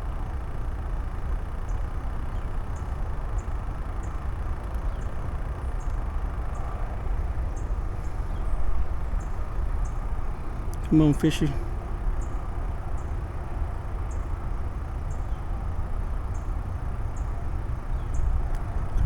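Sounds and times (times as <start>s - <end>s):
wind buffeting microphone: 18.0s - 19.0s.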